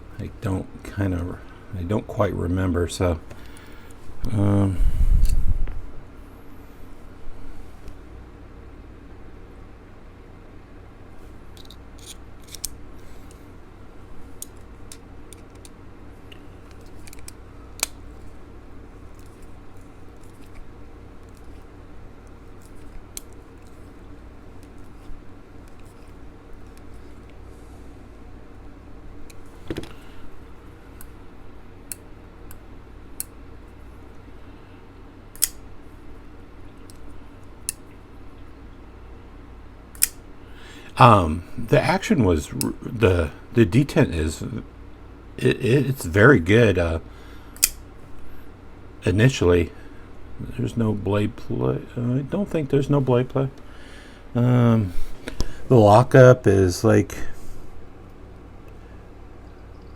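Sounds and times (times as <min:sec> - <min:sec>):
pocket knife blade clicks: 0:35.4 - 0:35.6, 0:40.0 - 0:40.2, 0:47.6 - 0:47.8.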